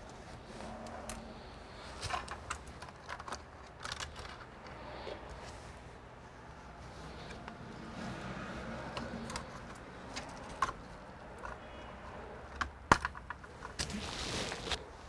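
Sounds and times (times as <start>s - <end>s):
light clicks and taps of parts: 0.0s - 6.0s, 6.8s - 13.9s
short rustle: 13.6s - 15.0s.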